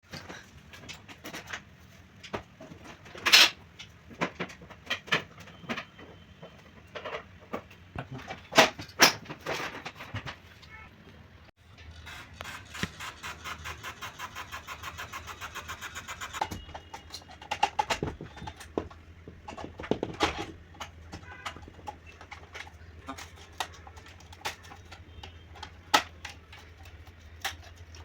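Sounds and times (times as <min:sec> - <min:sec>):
rapid mechanical ticking: 0:11.9 - 0:17.0.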